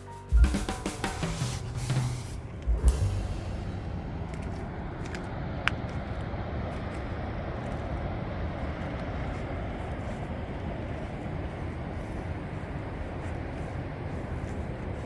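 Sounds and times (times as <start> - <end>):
wind: 0.0 - 15.0
ocean surf: 0.4 - 9.3.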